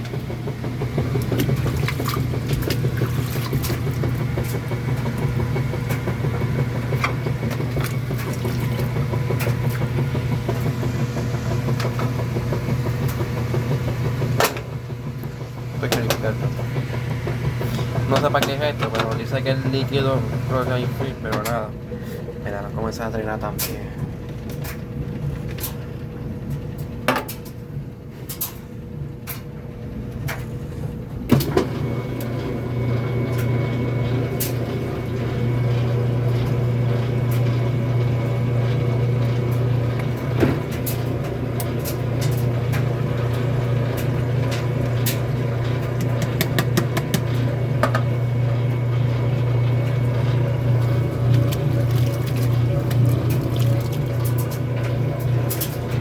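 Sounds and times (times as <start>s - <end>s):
washing machine clicking: 0.0s - 21.7s, 31.3s - 56.0s
motor humming: 0.0s - 22.5s, 31.2s - 56.0s.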